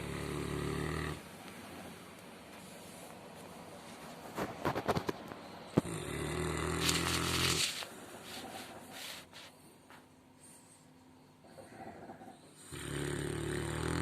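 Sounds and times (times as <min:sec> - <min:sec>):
dog snoring: 0:00.0 - 0:01.3, 0:05.7 - 0:09.1, 0:11.4 - 0:14.0.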